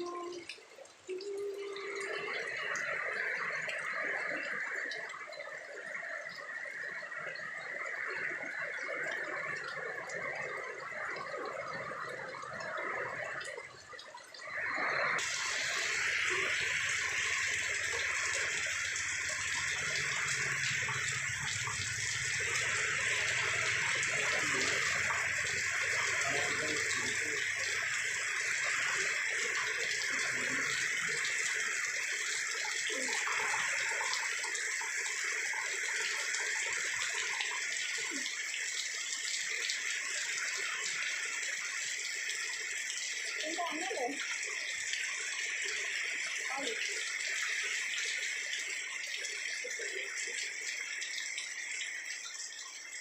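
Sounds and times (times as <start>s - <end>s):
heavy rain pouring: 0.0s - 13.8s, 14.4s - 38.5s.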